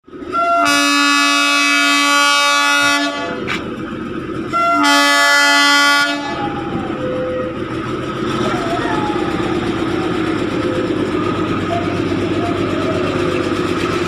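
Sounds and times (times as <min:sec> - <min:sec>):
train rumbling: 0:00.0 - 0:14.0
train horn blasts: 0:00.2 - 0:03.5, 0:04.5 - 0:06.5.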